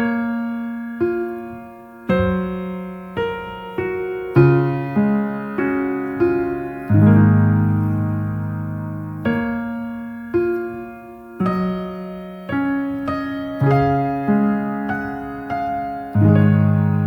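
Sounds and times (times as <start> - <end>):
slow gentle piano melody: 0.0 - 17.0.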